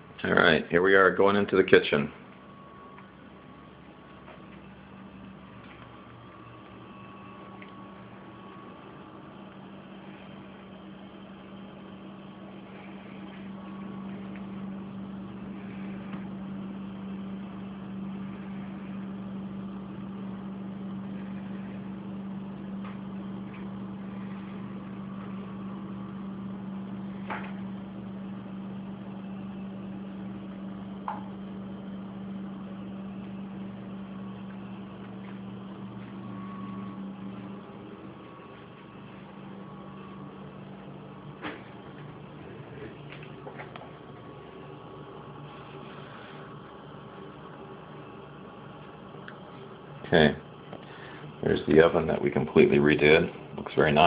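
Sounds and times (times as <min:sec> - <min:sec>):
low mechanical hum: 0:00.0 - 0:54.0.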